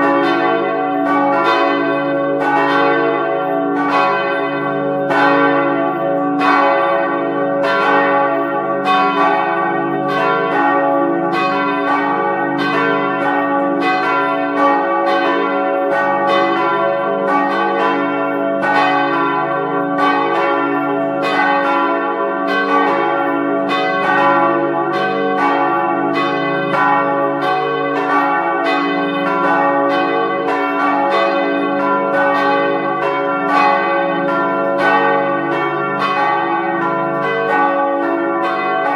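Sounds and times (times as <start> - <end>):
church bells ringing: 0.0 - 38.9.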